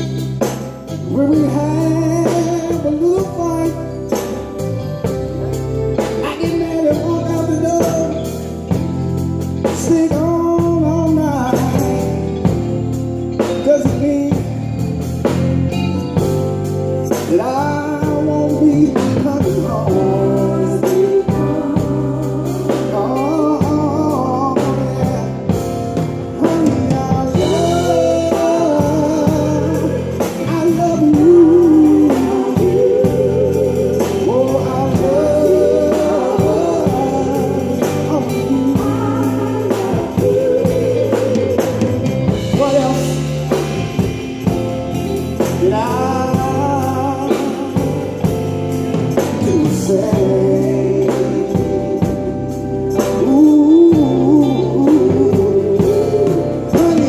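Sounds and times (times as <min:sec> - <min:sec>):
person singing: 0:00.0 - 0:12.8, 0:17.0 - 0:57.0
live band playing: 0:00.0 - 0:57.0.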